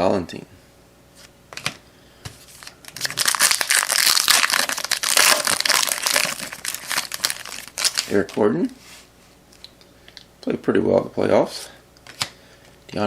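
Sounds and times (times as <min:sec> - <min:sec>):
wrapper crinkling: 0:02.5 - 0:08.4.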